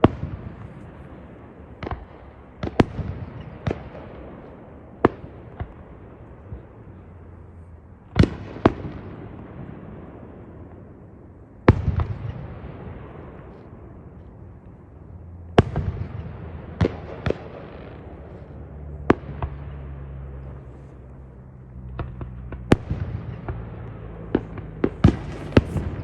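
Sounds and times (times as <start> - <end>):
low steady hum: 12.4 - 26.0
fireworks bangs: 21.9 - 26.0.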